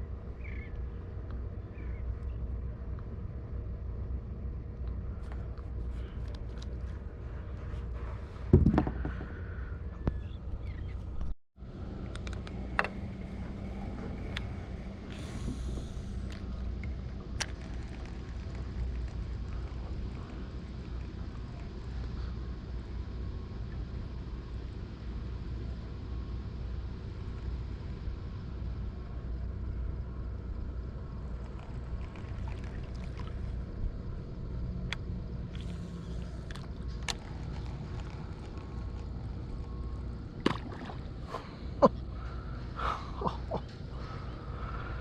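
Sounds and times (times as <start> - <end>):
low rumble: 0.0 - 45.0
water lapping against hull: 31.2 - 34.0, 35.4 - 44.8
knocks and splashes: 40.4 - 41.1.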